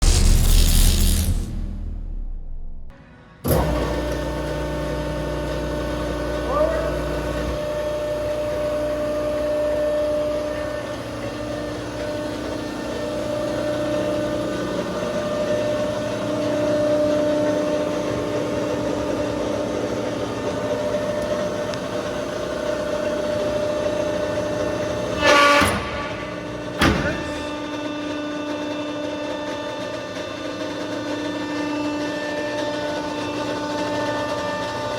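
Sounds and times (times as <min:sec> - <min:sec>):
hydraulic power unit hum: 0:00.0 - 0:34.9
loud clunks: 0:25.1 - 0:27.8.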